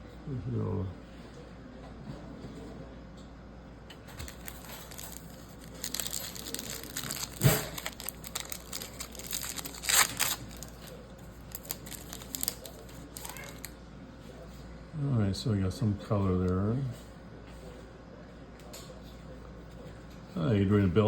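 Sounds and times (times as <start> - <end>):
wrapper tearing and crinkling: 4.2 - 13.7.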